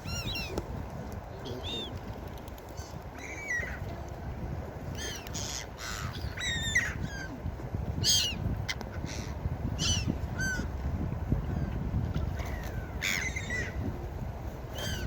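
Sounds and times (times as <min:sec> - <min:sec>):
gulls calling: 0:00.0 - 0:00.8, 0:01.4 - 0:02.0, 0:02.6 - 0:04.1, 0:04.9 - 0:07.4, 0:11.4 - 0:14.0, 0:14.7 - 0:15.0.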